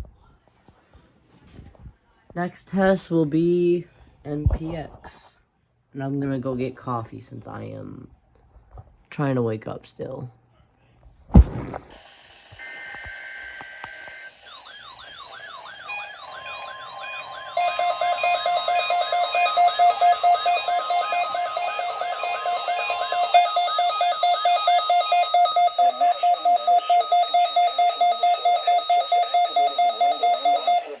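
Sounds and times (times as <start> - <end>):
loud rapid beeping: 15.1 - 31.0.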